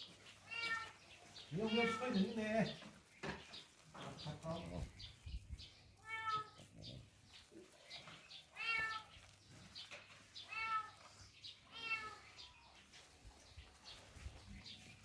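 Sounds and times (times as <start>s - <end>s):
cat meowing: 0.5s - 1.0s, 6.0s - 6.6s, 8.6s - 9.1s, 10.5s - 11.0s, 11.7s - 12.2s.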